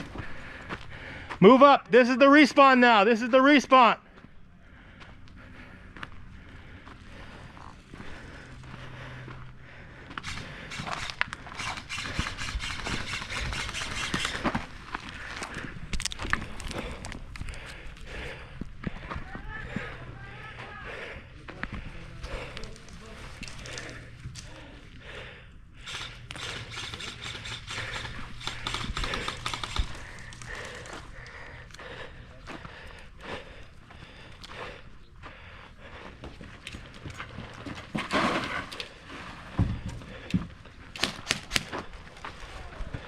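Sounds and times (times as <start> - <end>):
sharp irregular clicks: 25.8 - 31.8.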